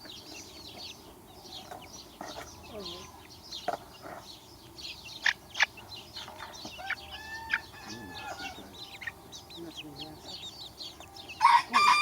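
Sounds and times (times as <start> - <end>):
baby chicks peeping: 0.0 - 12.0
adult chicken call: 6.8 - 9.2, 11.3 - 12.0.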